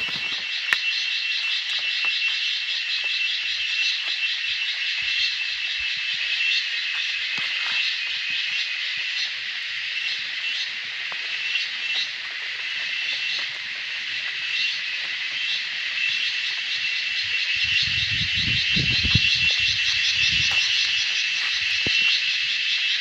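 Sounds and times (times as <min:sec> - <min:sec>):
insects chorus: 0:00.0 - 0:23.0.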